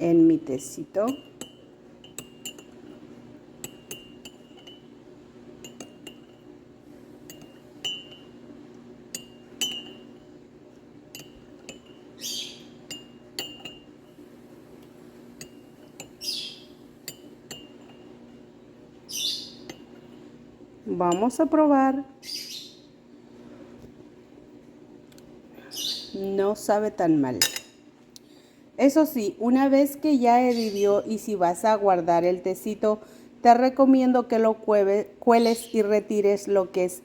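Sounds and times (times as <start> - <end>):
spoon clinking against cup: 1.1 - 3.0, 3.6 - 4.9, 5.6 - 6.4, 7.2 - 8.4, 9.1 - 10.2, 11.1 - 12.1, 12.8 - 13.9, 17.0 - 18.1.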